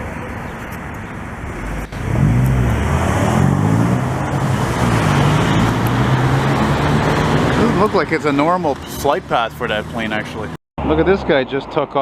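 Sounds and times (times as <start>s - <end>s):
vehicle engine droning: 1.5s - 11.1s.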